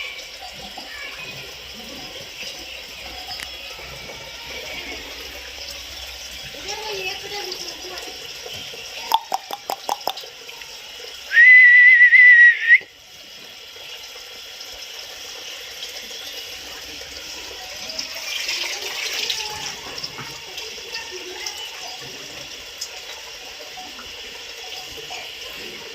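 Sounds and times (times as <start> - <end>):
shrill whistle: 11.3 - 12.9.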